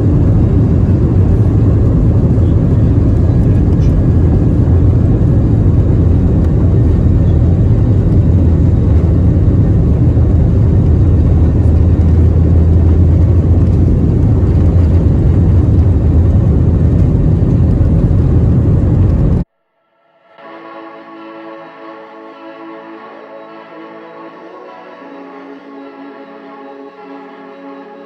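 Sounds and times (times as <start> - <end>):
airliner cabin rumble: 0.0 - 19.5.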